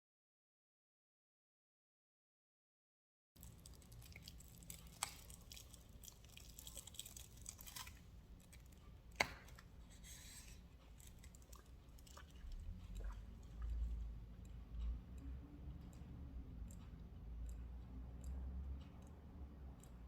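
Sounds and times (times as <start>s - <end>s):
rustling and scraping: 9.9s - 11.1s.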